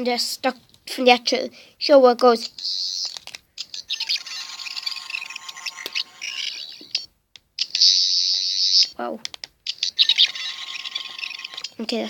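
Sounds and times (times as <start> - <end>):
toy warbling electronic trill: 2.4 - 9.0, 9.7 - 12.0.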